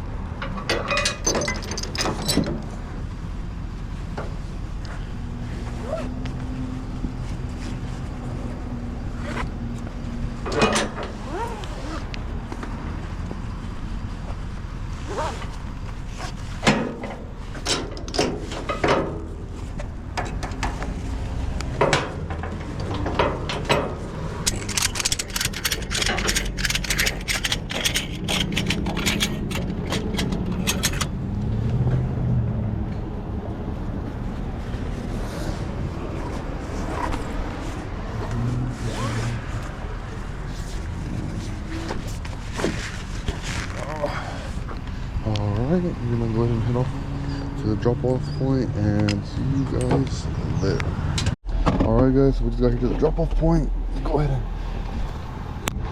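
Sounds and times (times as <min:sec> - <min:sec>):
metal clanks and knocks: 0:00.3 - 0:02.8, 0:10.4 - 0:11.2, 0:16.6 - 0:21.0, 0:21.7 - 0:31.2
rapid metallic clicking: 0:24.4 - 0:31.1.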